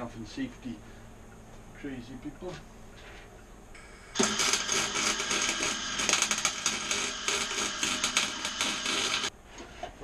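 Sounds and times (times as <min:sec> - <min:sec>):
welding arc crackling: 0:03.8 - 0:09.3.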